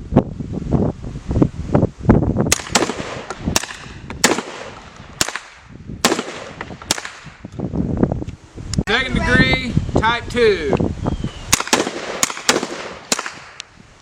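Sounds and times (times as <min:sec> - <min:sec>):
gunshots: 0:02.5 - 0:07.4, 0:11.5 - 0:13.6.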